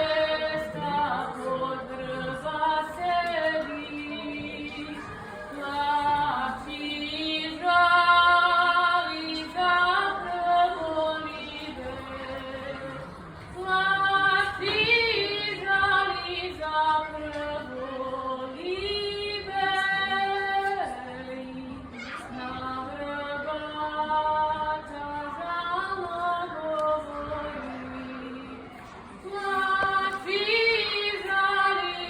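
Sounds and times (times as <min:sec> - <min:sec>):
girl singing: 0:29.2 - 0:32.0.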